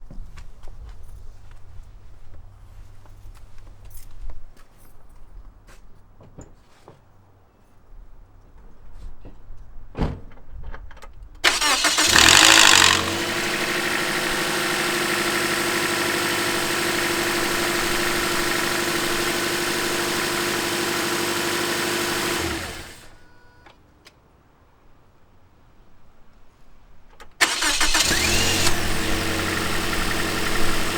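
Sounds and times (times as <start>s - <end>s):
car engine starting and idling: 11.4s - 23.2s, 27.4s - 30.9s
engine rattle: 11.4s - 23.2s, 27.4s - 30.9s.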